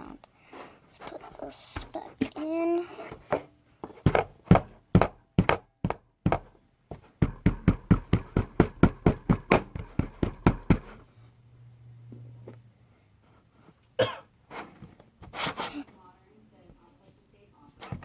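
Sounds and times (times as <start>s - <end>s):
sharp knocks on hard surface: 3.2s - 11.0s.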